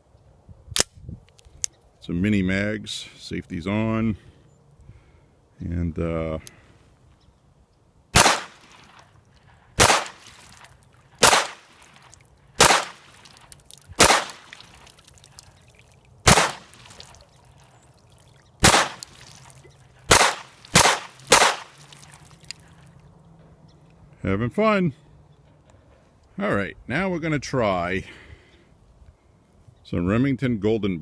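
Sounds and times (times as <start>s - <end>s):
pistol gunshots: 8.2s - 9.0s, 9.8s - 10.6s, 11.2s - 11.9s, 12.6s - 13.2s, 14.0s - 14.6s, 16.3s - 17.0s, 18.6s - 19.2s, 20.1s - 21.8s.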